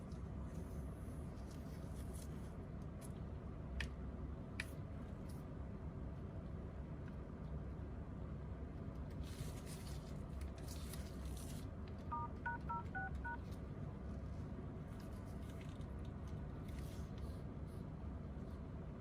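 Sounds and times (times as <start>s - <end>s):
faint steady hum: 0.0s - 19.0s
phone dial-pad touch tones: 12.1s - 13.4s.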